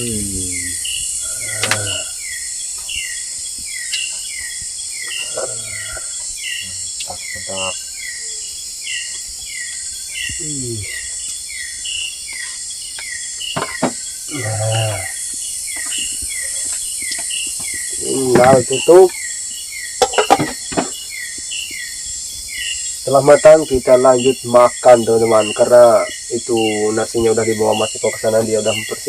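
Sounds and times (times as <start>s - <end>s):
low voices: 0.0s - 2.1s, 5.2s - 7.8s, 10.4s - 11.0s, 14.3s - 15.1s, 17.9s - 19.1s, 23.1s - 29.0s
high insect drone: 0.0s - 29.0s.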